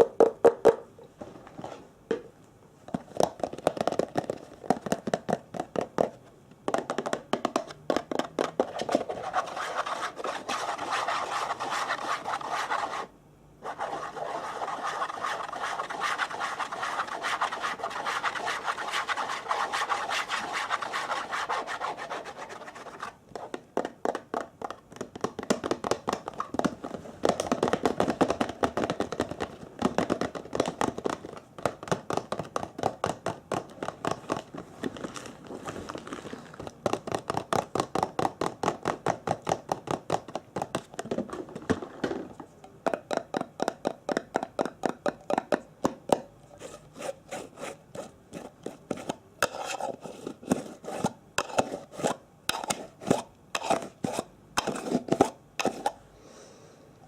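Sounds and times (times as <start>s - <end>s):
close rubbing sound: 8.7s - 23.5s, 46.6s - 48.5s.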